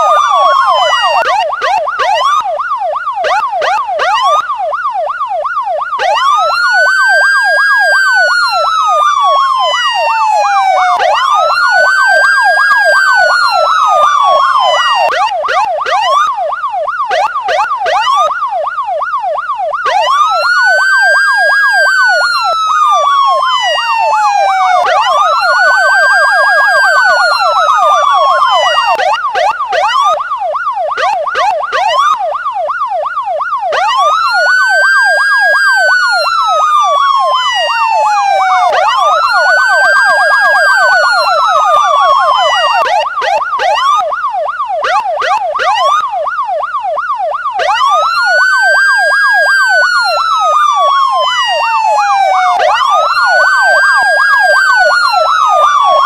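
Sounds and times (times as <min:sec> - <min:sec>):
police siren wail: 0:00.0 - 0:56.0
police siren yelp: 0:00.0 - 0:56.0.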